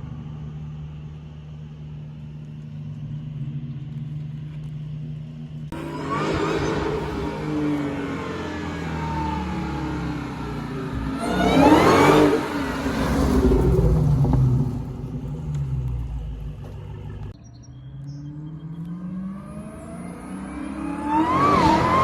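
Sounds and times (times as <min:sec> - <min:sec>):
car engine accelerating hard: 0:00.0 - 0:22.0
supercharger whine: 0:00.0 - 0:22.0.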